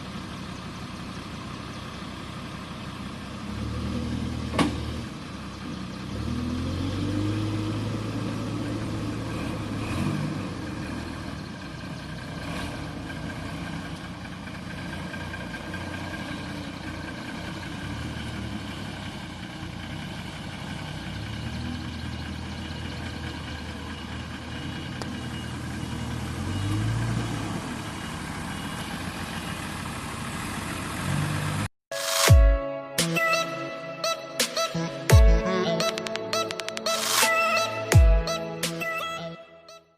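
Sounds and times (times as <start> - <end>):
diesel engine revving: 0.0 - 31.7.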